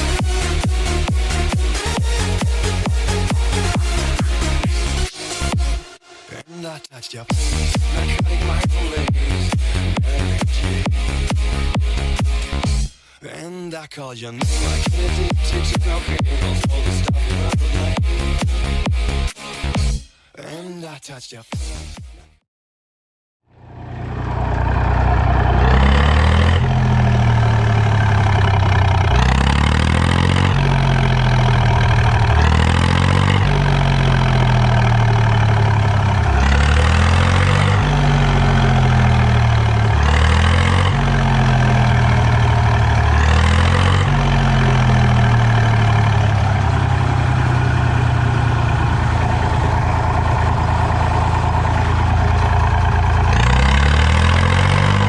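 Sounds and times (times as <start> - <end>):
tractor diesel engine revving: 0.0 - 6.0, 7.4 - 12.8, 14.4 - 19.3, 23.5 - 55.0.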